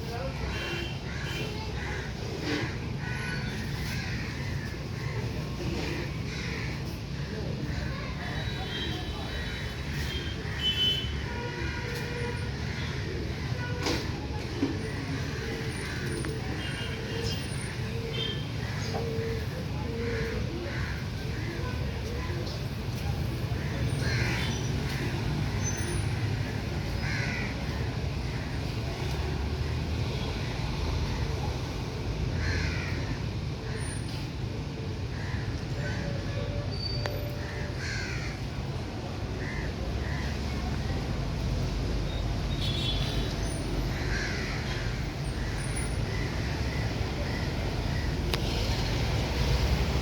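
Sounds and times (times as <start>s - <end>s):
low rumble of traffic: 0.0s - 50.0s
crow cawing: 23.6s - 24.7s, 27.0s - 27.7s, 32.4s - 33.2s, 37.4s - 38.4s, 44.0s - 48.1s.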